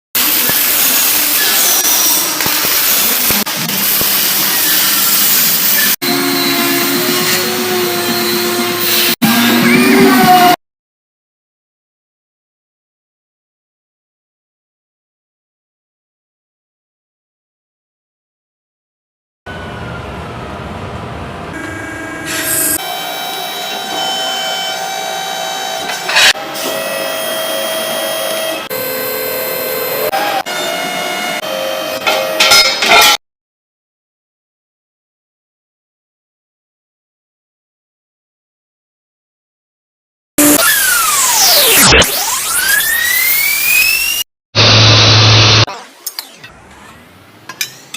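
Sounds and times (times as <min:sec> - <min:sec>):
steady whine: 0:19.5 - 0:26.2.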